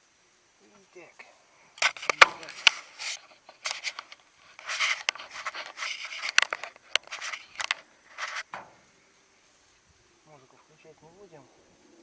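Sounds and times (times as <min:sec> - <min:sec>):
sharp clicks: 0:01.8 - 0:02.8
objects scraping and rustling: 0:01.8 - 0:09.8.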